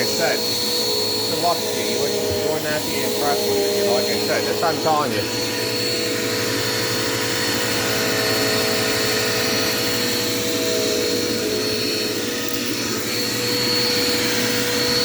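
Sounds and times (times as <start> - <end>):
vacuum cleaner running: 0.0 - 15.0.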